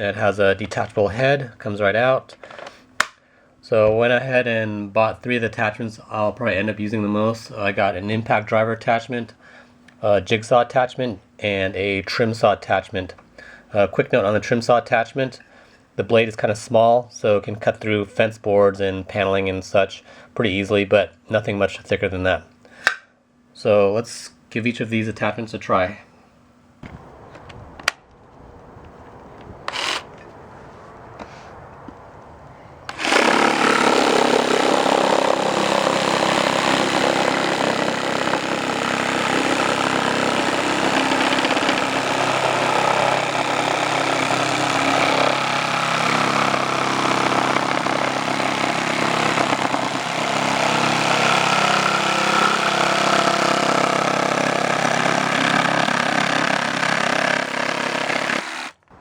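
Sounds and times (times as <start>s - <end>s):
cordless power tool running: 29.6s - 30.2s, 32.9s - 58.8s.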